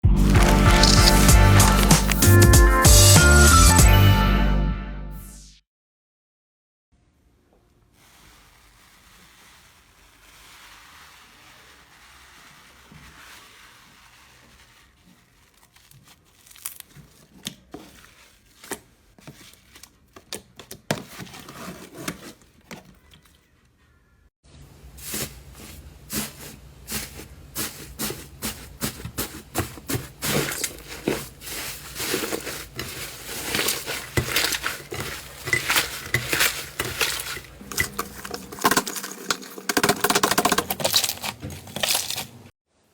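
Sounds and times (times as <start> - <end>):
slime squishing and popping: 0.2 - 2.4.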